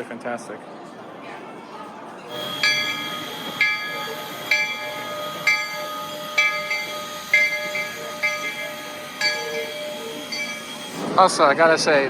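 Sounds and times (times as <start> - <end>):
train bell ringing: 2.3 - 11.2.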